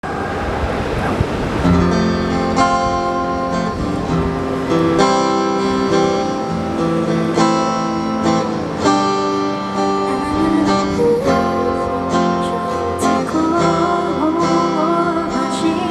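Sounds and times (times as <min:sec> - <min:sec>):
acoustic guitar strumming chords: 0:01.6 - 0:15.9.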